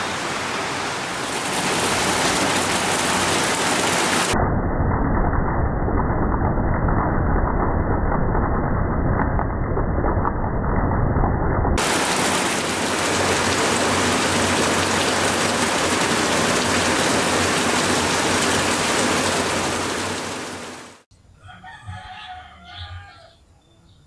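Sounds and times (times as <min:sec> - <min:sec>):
heavy rain: 0:00.0 - 0:04.4, 0:11.8 - 0:21.1.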